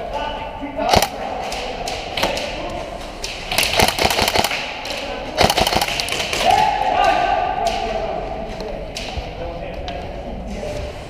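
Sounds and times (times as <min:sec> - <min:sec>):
airsoft guns firing: 0:00.9 - 0:08.0.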